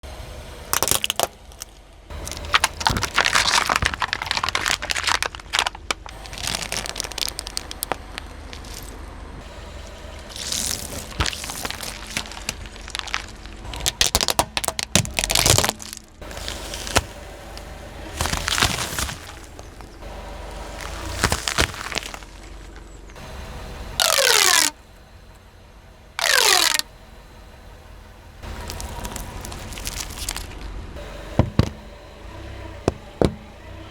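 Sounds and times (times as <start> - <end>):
low steady hum: 0.0 - 33.9
plastic toy cracking under tyre: 0.7 - 9.0, 10.3 - 17.1, 18.2 - 19.9, 20.8 - 22.4, 24.0 - 24.8, 26.2 - 26.8, 28.6 - 30.6.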